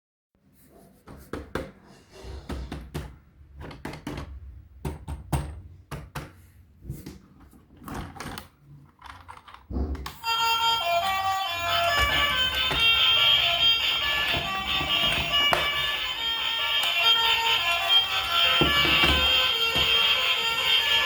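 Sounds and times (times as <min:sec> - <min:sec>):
background music: 0:10.2 - 0:21.0
toys and packaging handled: 0:11.6 - 0:21.0.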